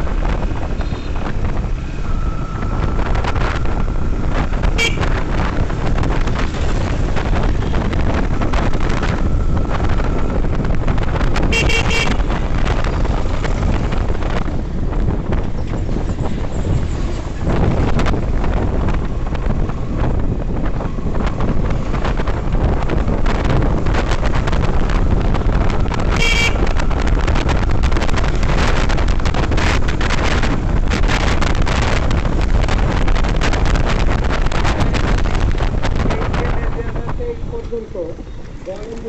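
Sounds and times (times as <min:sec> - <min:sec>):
motorcycle engine rumble: 0:00.0 - 0:39.0
road noise: 0:00.0 - 0:39.0
wind buffeting microphone: 0:00.0 - 0:39.0
vehicle horn honk: 0:04.7 - 0:05.2, 0:11.4 - 0:12.4, 0:26.1 - 0:26.8.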